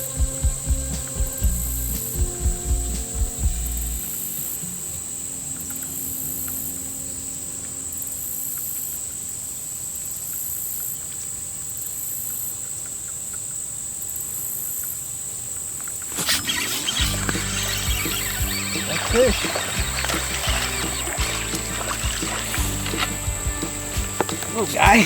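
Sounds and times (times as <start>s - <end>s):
pulsing high buzz: 0.0s - 4.9s, 16.3s - 25.0s
insects trilling: 0.0s - 25.0s.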